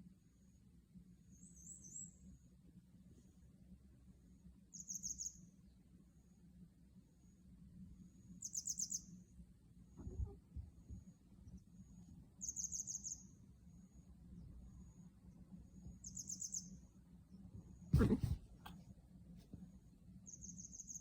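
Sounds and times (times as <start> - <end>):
small bird chirping: 1.3 - 2.2, 4.7 - 5.5, 8.4 - 9.2, 12.4 - 13.4, 15.9 - 16.8, 20.3 - 21.0.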